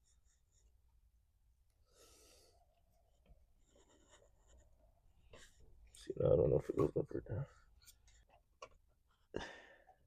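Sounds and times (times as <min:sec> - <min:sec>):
soft breath-like noise: 0:01.7 - 0:05.8.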